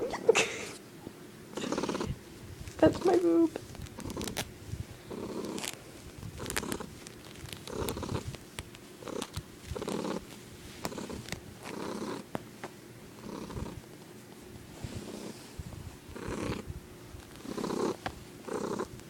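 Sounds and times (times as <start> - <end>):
cat purring: 1.5 - 2.2, 2.8 - 4.4, 5.0 - 8.4, 9.0 - 12.4, 13.1 - 13.9, 14.7 - 19.0.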